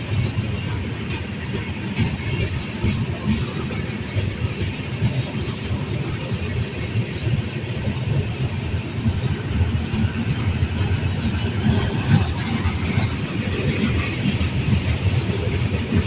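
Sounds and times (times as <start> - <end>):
freight train rumble: 0.0 - 16.0
wheels clicking on rails: 0.0 - 16.0.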